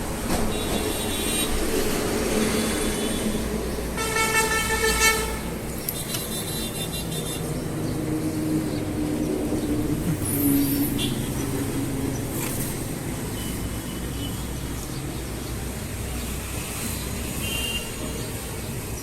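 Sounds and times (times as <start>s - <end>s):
road traffic noise: 0.0s - 19.0s
vehicle horn honking: 0.5s - 1.6s, 4.0s - 7.4s, 17.4s - 18.1s.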